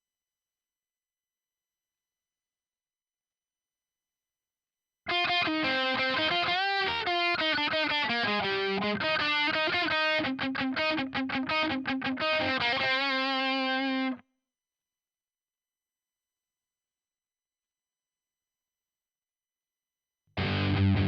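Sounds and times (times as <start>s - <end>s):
distorted electric guitar riff: 5.1s - 14.2s, 20.4s - 21.0s.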